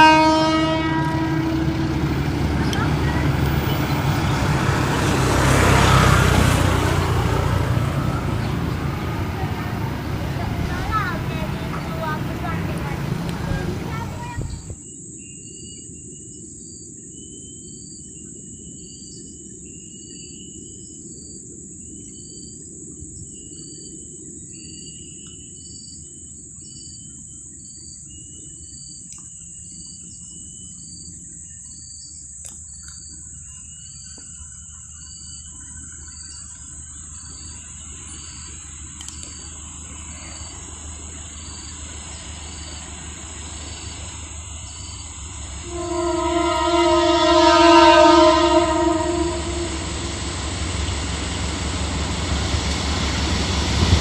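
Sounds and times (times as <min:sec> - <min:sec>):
approaching train hum: 0:00.0 - 0:14.8, 0:33.0 - 0:54.0
high insect drone: 0:00.0 - 0:54.0
low rumble: 0:00.5 - 0:14.8, 0:39.8 - 0:54.0
insect chirp: 0:00.8 - 0:54.0.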